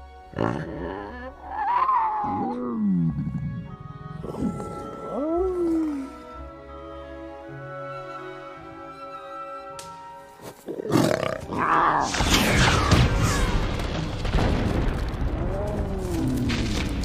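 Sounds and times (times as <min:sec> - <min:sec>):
orchestral music: 0:00.0 - 0:17.0
dragon roar: 0:10.8 - 0:12.2, 0:15.3 - 0:16.8.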